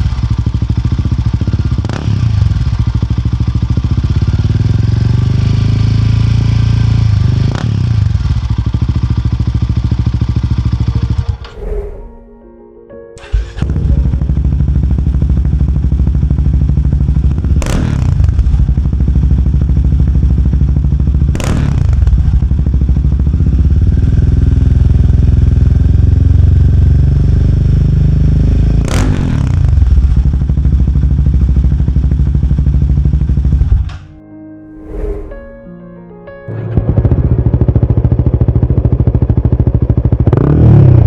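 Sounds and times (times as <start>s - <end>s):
motorcycle engine idling loudly: 0.0s - 10.8s, 14.7s - 27.0s.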